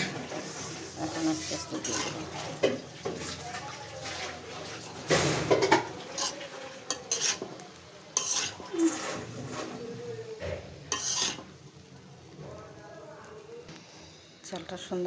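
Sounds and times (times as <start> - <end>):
utensil scraping a pan: 0.0 - 10.2, 10.8 - 11.7.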